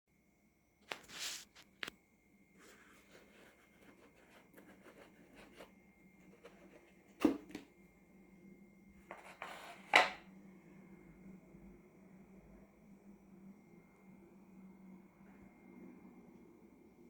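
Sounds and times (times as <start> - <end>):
faint steady hum: 0.1 - 17.0.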